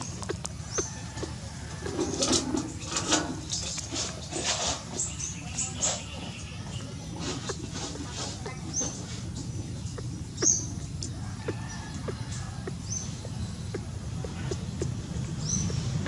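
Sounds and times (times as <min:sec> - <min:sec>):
small animal chirping: 0:00.0 - 0:01.4, 0:05.1 - 0:16.0.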